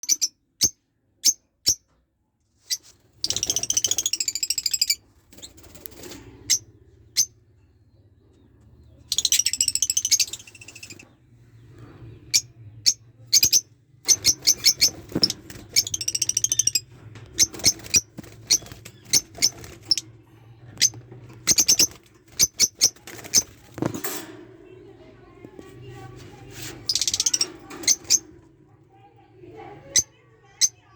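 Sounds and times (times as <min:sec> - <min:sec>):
bird chirping: 0:02.7 - 0:23.9, 0:26.8 - 0:28.4
bird warbling song: 0:03.2 - 0:20.1, 0:26.9 - 0:28.3.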